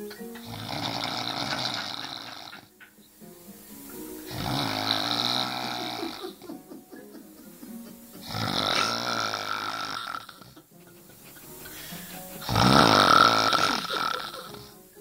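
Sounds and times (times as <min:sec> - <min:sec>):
man snoring heavily: 0:00.4 - 0:02.7, 0:04.3 - 0:06.3, 0:08.2 - 0:10.6, 0:12.4 - 0:14.8.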